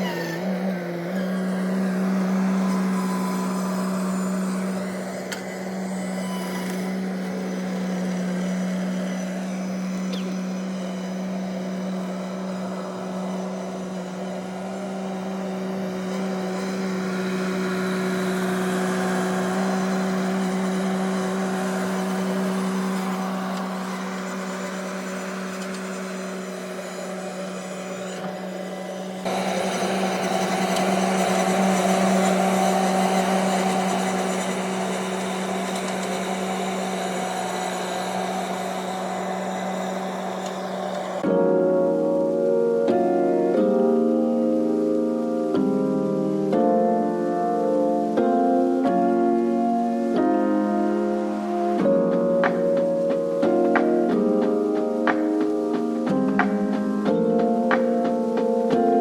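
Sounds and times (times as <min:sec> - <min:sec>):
skid steer engine humming: 0:00.0 - 0:42.6.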